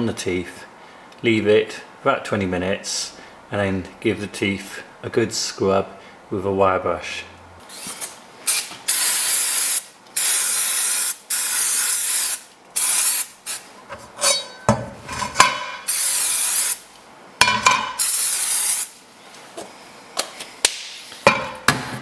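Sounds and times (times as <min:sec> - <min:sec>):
knocks and clinks of handling: 0:14.2 - 0:15.8
aerosol can spraying: 0:18.0 - 0:18.9.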